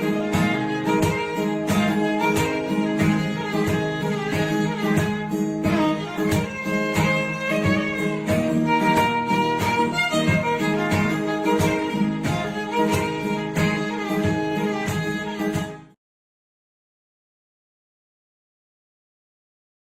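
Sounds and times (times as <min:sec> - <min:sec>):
steady beat: 0:00.0 - 0:15.9
plucked guitar: 0:00.0 - 0:16.0
violin tune: 0:00.0 - 0:16.0.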